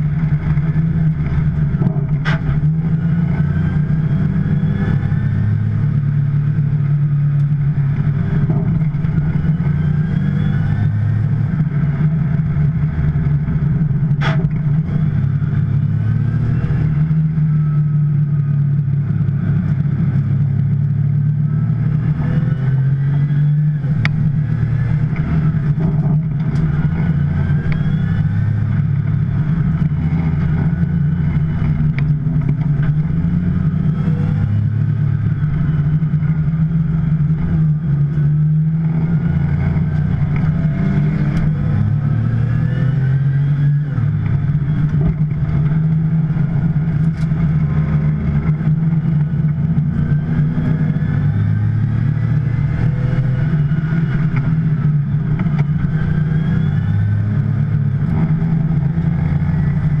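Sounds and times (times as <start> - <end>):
car engine accelerating: 0.0 - 60.0.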